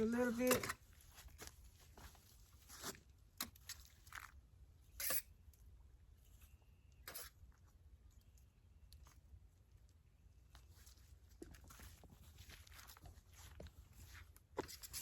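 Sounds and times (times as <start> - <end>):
garden rake scraping soil: 4.9 - 5.4, 7.0 - 7.4.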